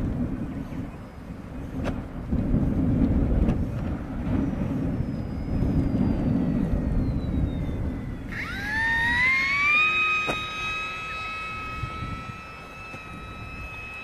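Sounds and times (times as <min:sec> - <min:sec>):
wind buffeting microphone: 0:00.0 - 0:14.0
model plane motor whine: 0:03.1 - 0:14.0.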